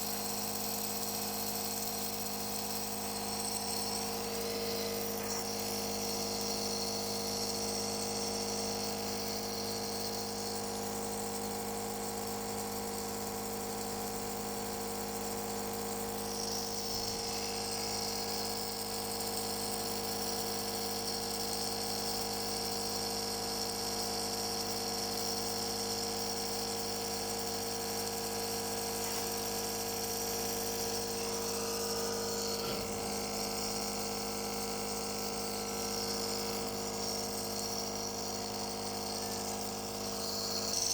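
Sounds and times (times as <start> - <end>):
nebulizer motor hum: 0.0 - 40.9
air hissing: 3.4 - 7.4, 28.5 - 40.9.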